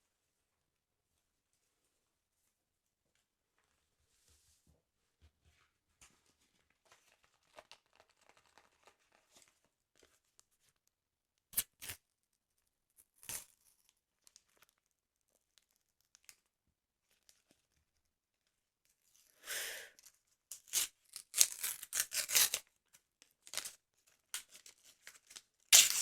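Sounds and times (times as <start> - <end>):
paper rustling: 6.0 - 10.4
paper tearing: 25.8 - 26.0.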